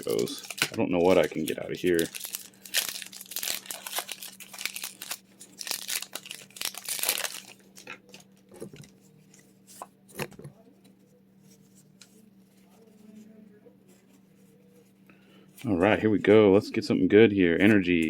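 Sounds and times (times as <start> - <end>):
foil wrapper tearing and crumpling: 0.0 - 8.9.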